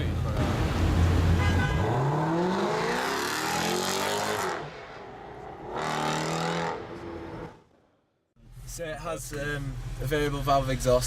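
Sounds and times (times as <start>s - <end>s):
car engine revving: 0.4s - 7.8s.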